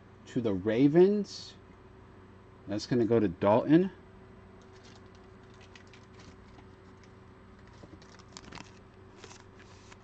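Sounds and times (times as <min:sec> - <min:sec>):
low electrical hum: 0:00.0 - 0:10.0
trading cards rustling and clicking: 0:04.6 - 0:10.0.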